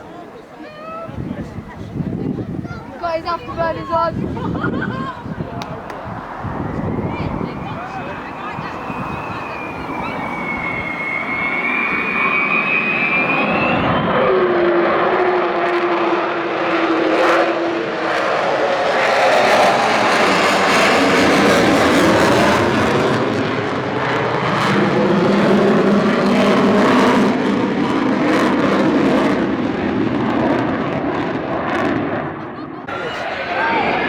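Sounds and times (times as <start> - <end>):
loud jet roar: 3.2 - 34.0
low tone falling in pitch: 5.3 - 14.2
high whistling tone: 5.7 - 14.3.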